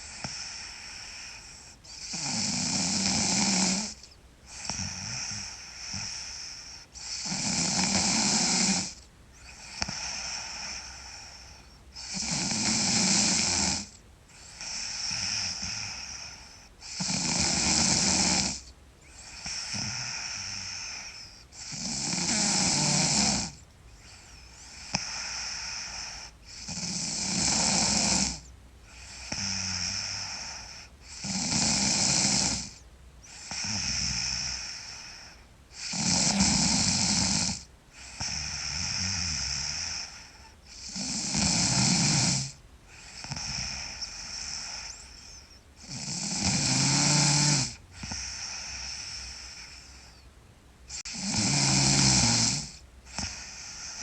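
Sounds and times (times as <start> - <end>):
person snoring loudly: 1.9 - 9.0, 12.0 - 23.6, 24.7 - 35.2, 35.8 - 45.0, 45.8 - 49.8, 51.0 - 54.0
soft breathing: 3.8 - 7.4, 8.4 - 12.2, 13.8 - 17.0, 18.6 - 26.8, 28.3 - 31.2, 32.7 - 37.3, 37.9 - 41.0, 42.9 - 45.9, 47.4 - 51.1, 52.8 - 54.0.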